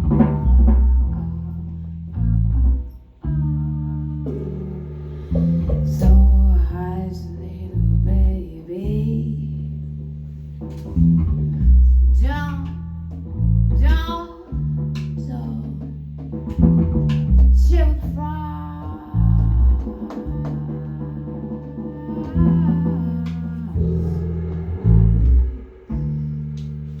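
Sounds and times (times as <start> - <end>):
bass guitar notes: 0.0 - 27.0.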